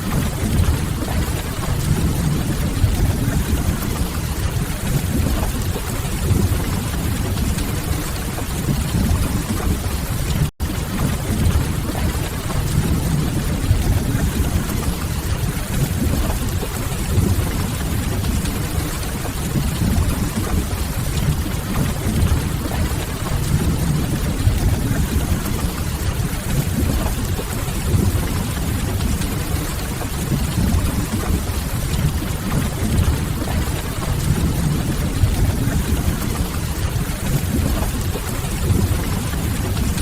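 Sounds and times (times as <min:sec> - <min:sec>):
rainfall: 0:00.0 - 0:40.0.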